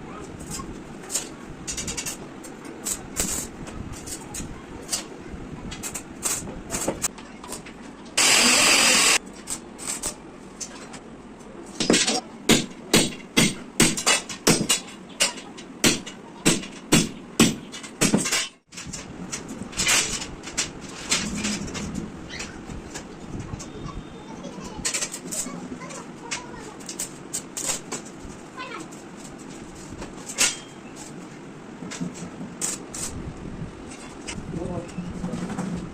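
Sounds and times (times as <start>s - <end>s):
hammer strikes on metal: 11.8s - 18.6s.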